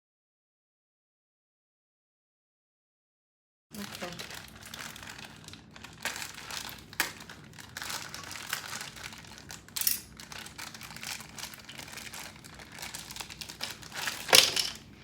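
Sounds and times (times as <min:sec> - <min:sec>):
packaging crinkling: 0:03.8 - 0:15.0.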